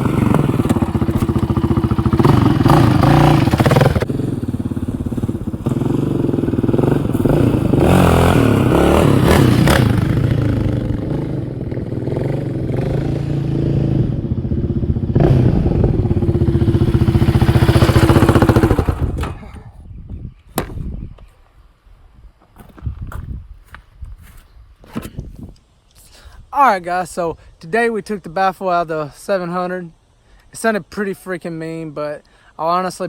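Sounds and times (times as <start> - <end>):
four-stroke engine revving: 0.0 - 19.6.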